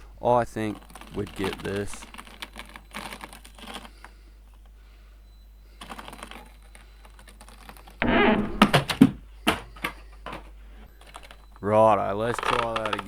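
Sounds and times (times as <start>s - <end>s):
rc crawler clicking over rock: 0.0s - 4.7s, 5.8s - 8.0s, 11.0s - 13.0s.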